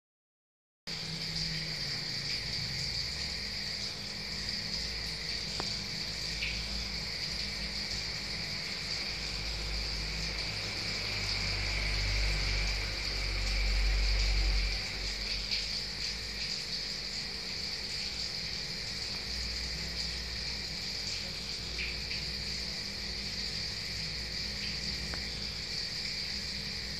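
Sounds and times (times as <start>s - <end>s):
insects chirring: 0.9s - 26.9s.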